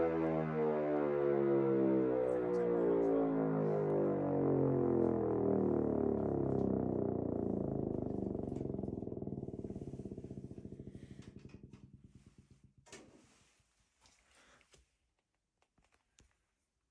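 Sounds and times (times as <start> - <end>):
air raid siren winding down: 0.0 - 12.8.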